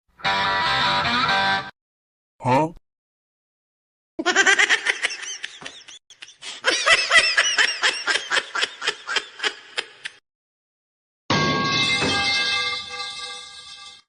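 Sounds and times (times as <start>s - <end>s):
high-pitched giggling laugh: 4.2s - 10.2s.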